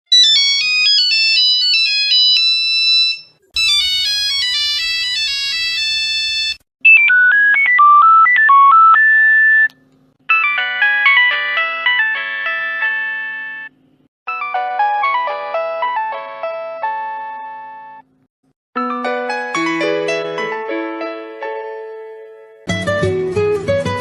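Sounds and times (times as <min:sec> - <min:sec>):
phone ringtones beeping: 0:01.3 - 0:09.7, 0:10.3 - 0:13.7.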